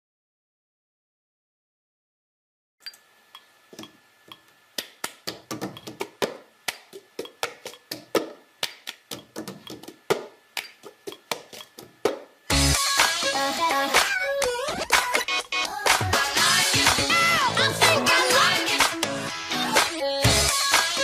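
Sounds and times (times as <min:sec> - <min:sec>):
sharp taps and clicks: 0:03.8 - 0:12.3.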